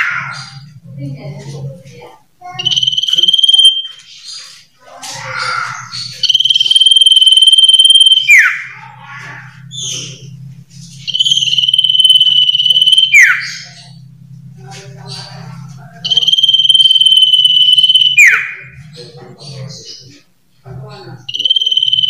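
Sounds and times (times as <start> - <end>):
faint low hum: 0.0 - 22.0
bird whistling: 2.5 - 4.6, 5.9 - 8.7, 11.0 - 14.0, 16.0 - 18.7, 21.3 - 22.0
soft bird chirps: 2.6 - 8.5.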